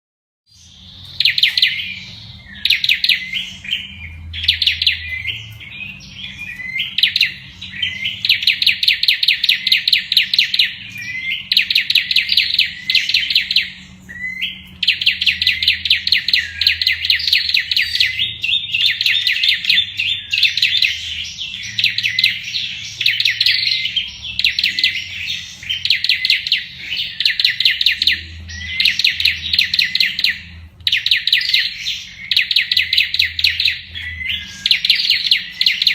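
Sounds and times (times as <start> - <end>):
bird singing rapid trills: 0.5 - 35.9.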